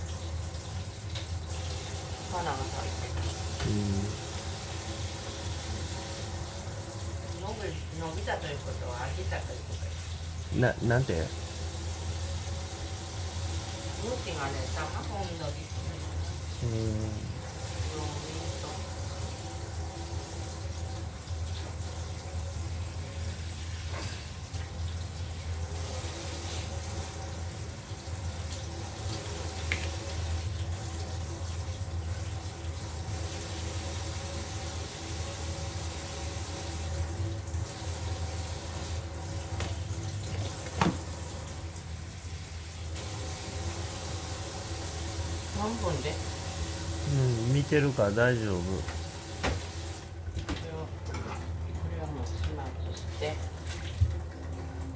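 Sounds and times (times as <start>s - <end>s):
tap water running into sink: 0.0s - 16.6s, 17.3s - 54.9s
low steady hum: 14.0s - 21.6s.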